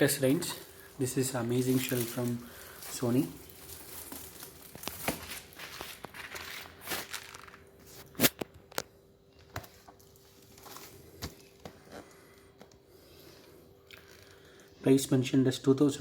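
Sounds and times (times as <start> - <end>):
packaging rustling: 0.0 - 8.8
faint steady hum: 0.0 - 16.0.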